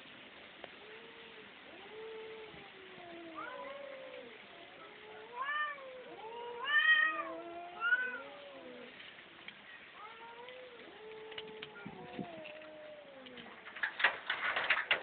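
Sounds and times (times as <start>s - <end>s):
cat meowing: 1.7s - 8.9s.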